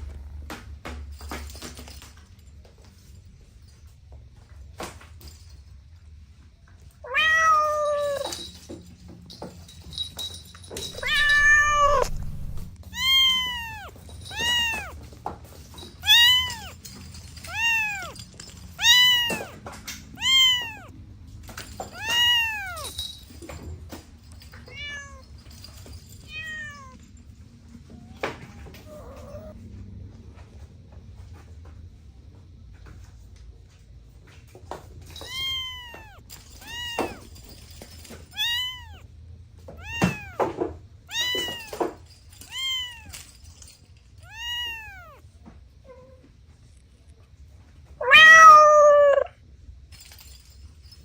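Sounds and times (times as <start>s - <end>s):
cats meowing: 7.0s - 8.4s, 10.9s - 15.2s, 15.8s - 21.0s, 21.9s - 23.1s, 24.6s - 25.4s, 26.2s - 27.1s, 27.9s - 29.6s, 35.1s - 37.5s, 38.2s - 39.1s, 39.7s - 43.3s, 44.2s - 46.3s, 48.0s - 49.4s.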